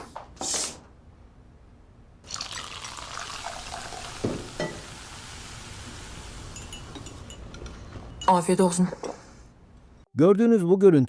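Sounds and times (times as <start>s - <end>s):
cola fizzing in a glass: 2.2s - 5.3s.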